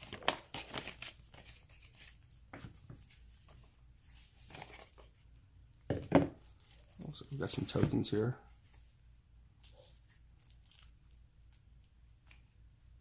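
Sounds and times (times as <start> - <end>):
paper and card rustling: 0.0 - 5.2, 6.4 - 9.0.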